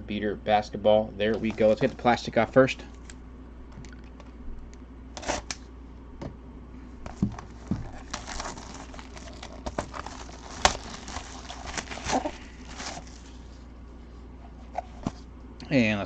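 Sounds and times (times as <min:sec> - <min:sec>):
shrink wrap crinkling: 0:01.4 - 0:03.2, 0:07.1 - 0:13.6.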